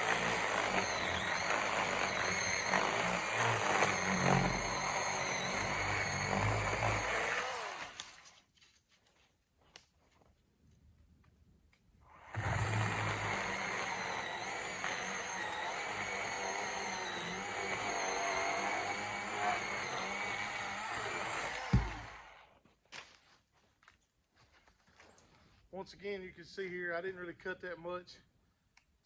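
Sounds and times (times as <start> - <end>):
electric chainsaw cutting log: 0.0 - 8.3, 12.1 - 22.6.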